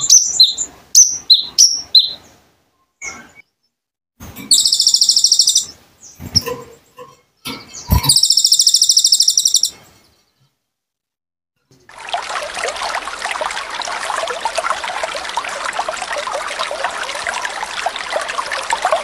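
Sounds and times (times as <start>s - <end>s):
songbird chirps and buzzy trills: 4.5s - 10.3s.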